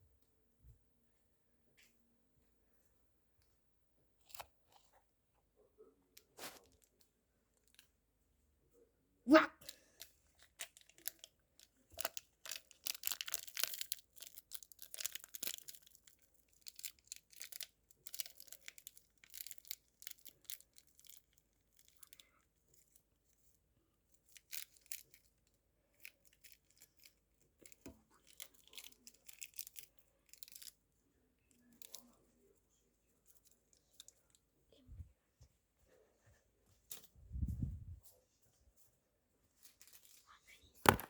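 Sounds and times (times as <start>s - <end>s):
plastic packaging crinkling and tearing: 9.6s - 22.2s, 24.3s - 25.3s, 26.0s - 30.8s.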